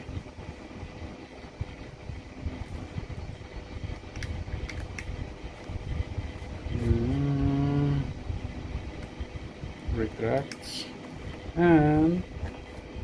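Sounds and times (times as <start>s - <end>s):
person humming: 6.7s - 8.2s.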